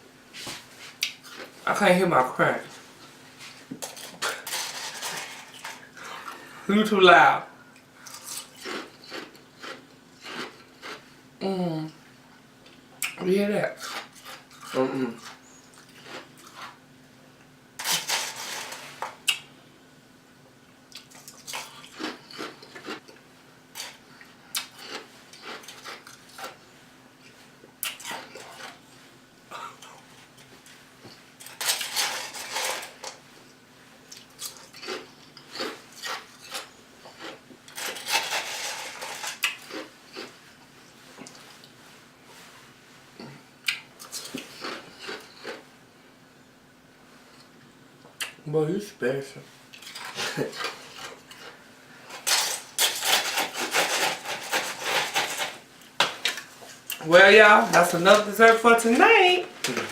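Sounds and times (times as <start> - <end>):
ice being chewed: 8.0 - 11.1, 13.8 - 16.8, 20.9 - 26.6, 34.1 - 40.4, 43.7 - 45.6, 49.7 - 51.6.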